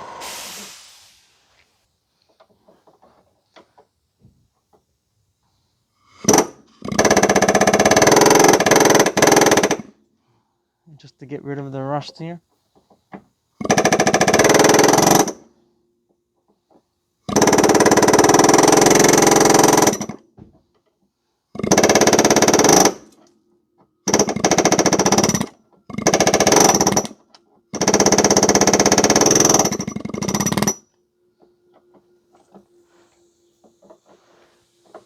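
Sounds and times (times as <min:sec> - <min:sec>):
pneumatic air hammer chiselling metal: 0:17.3 - 0:20.2, 0:24.1 - 0:30.9.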